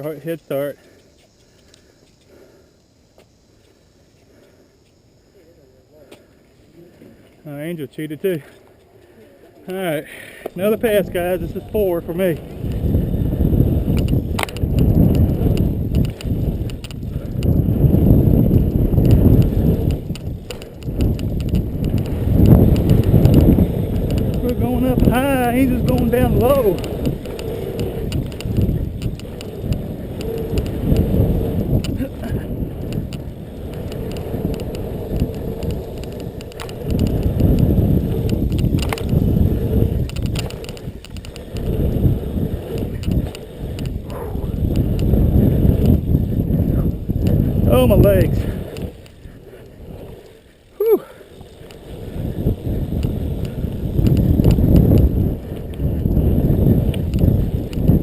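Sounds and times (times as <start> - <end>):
bike tyres rumbling: 6.0 - 58.0
bike clicks and rattles: 8.4 - 58.0.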